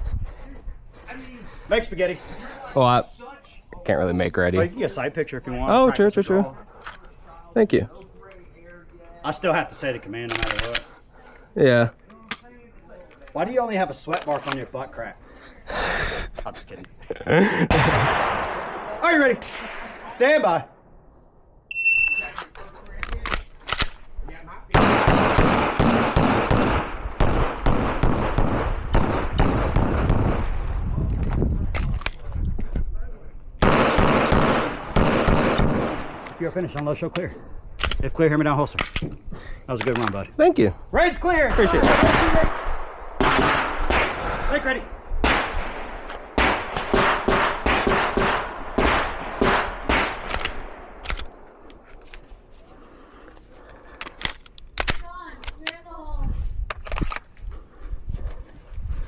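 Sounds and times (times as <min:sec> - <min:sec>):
pistol shots echoing: 0:24.8 - 0:30.7, 0:33.6 - 0:36.4, 0:41.6 - 0:44.3, 0:45.2 - 0:51.5.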